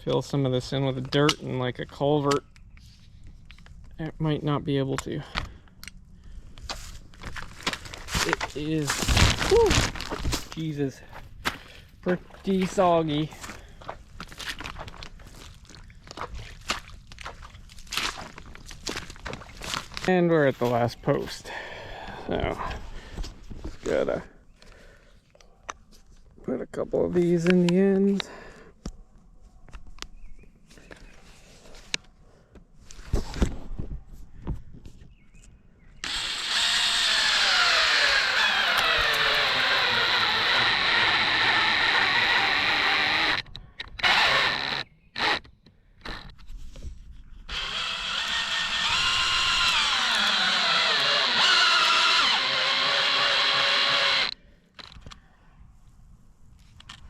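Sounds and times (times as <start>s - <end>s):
power drill running under load: 36.0s - 43.4s, 44.0s - 45.4s, 47.5s - 54.4s.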